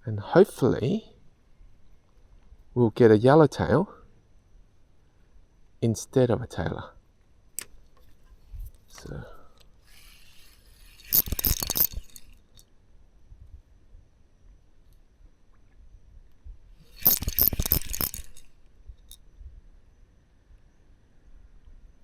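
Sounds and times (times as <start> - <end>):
fishing reel clicking: 9.8 - 12.6, 16.8 - 19.2.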